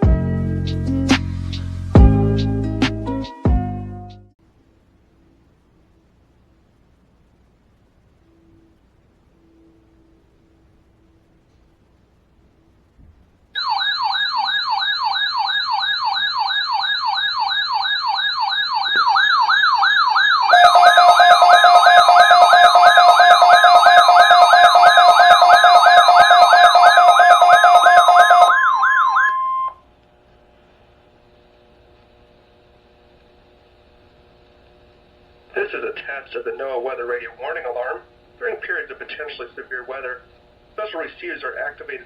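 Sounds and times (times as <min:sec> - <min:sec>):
steady alert tones: 0:13.6 - 0:29.8
warbling alarm tone: 0:13.6 - 0:29.8.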